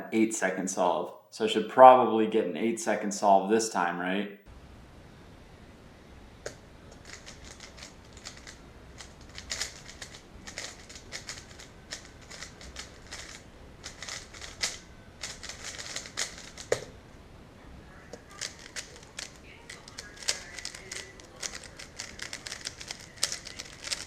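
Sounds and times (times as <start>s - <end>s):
plastic cube clicking: 6.5s - 16.9s, 18.2s - 24.0s.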